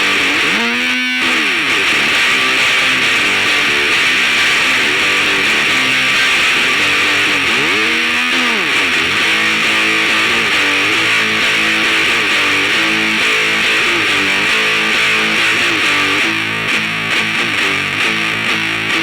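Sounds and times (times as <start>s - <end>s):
distorted electric guitar chords: 0.0s - 19.0s.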